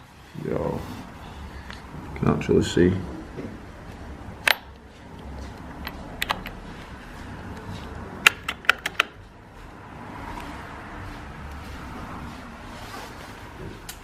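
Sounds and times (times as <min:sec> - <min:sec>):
sharp clicks of hard objects: 0:04.4 - 0:04.8, 0:05.6 - 0:06.6, 0:08.2 - 0:09.2.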